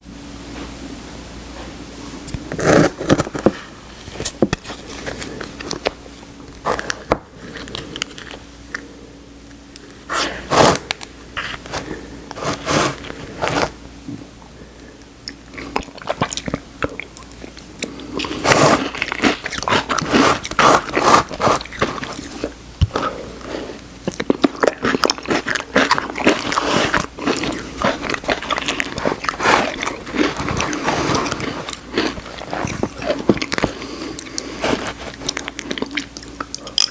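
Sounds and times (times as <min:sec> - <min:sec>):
chewing and crunching cookie pieces: 0:02.3 - 0:08.9, 0:15.2 - 0:36.9.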